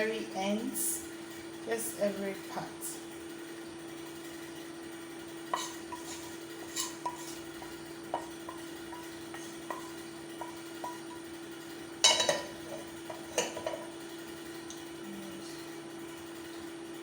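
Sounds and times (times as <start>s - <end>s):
steady low hum: 0.0s - 17.0s
spoon scraping a dish: 5.5s - 11.2s.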